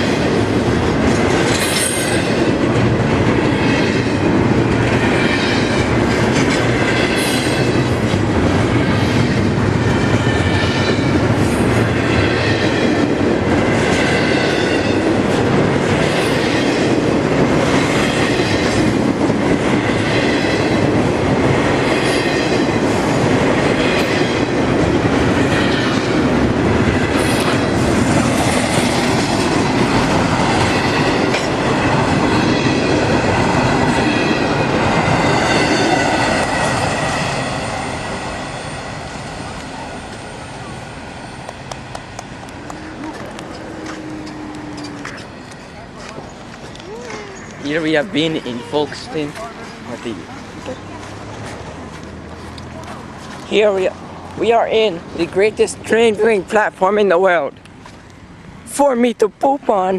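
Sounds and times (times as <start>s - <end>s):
train wheels rumbling on rail: 0.0s - 59.9s
wheels screeching: 42.3s - 54.2s.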